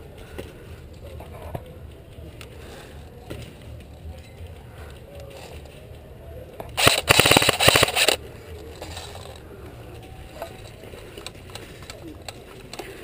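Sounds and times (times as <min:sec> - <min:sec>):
airsoft gun burst: 0:06.8 - 0:08.2.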